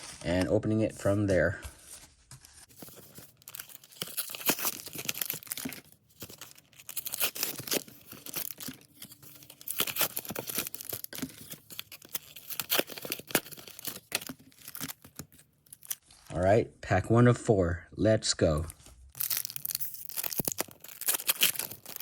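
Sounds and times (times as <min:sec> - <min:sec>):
packaging being torn and crinkled: 0:02.7 - 0:16.0, 0:19.1 - 0:22.0.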